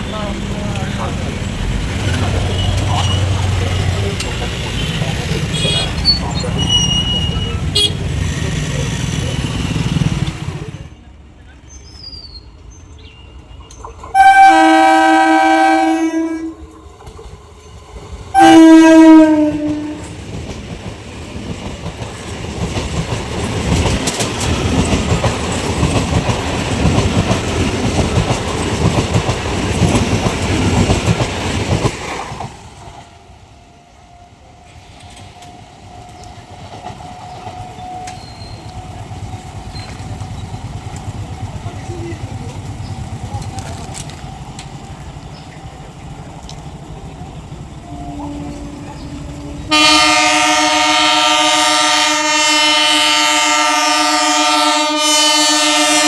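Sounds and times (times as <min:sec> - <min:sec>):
train passing with rail clatter: 0:00.0 - 0:56.0
train horn blasts: 0:06.8 - 0:08.2, 0:14.1 - 0:16.8, 0:18.3 - 0:20.1, 0:47.8 - 0:56.0.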